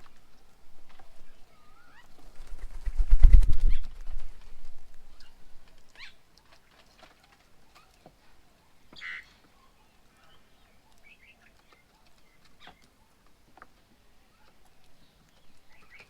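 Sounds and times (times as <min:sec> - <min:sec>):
loud low wing flutter: 0:02.0 - 0:05.1.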